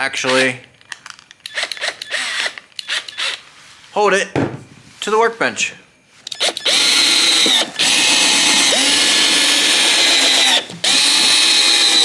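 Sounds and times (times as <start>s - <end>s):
power drill driving screws: 1.4s - 3.4s, 6.3s - 12.0s.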